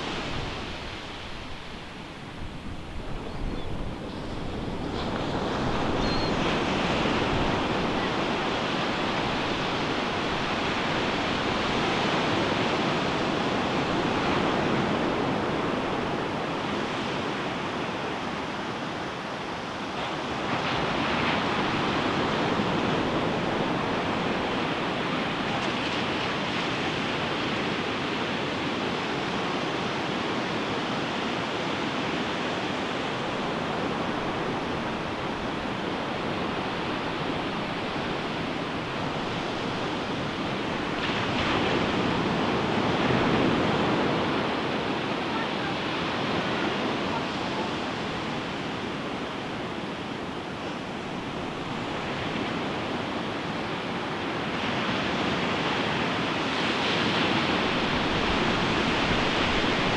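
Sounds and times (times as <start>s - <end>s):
wind noise on microphone: 0.0s - 17.4s
ocean waves breaking on beach: 0.0s - 59.9s.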